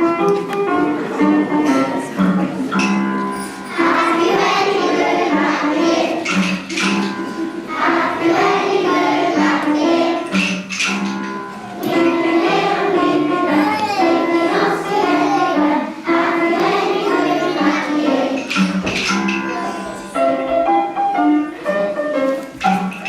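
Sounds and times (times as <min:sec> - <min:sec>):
musical accompaniment: 0:00.0 - 0:23.0
children singing in unison: 0:03.7 - 0:10.6, 0:11.7 - 0:20.1.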